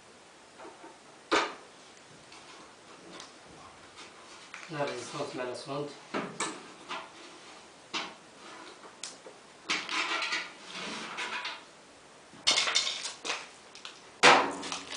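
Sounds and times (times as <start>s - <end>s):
hard objects knocking and rattling: 9.6s - 11.6s, 12.4s - 14.9s.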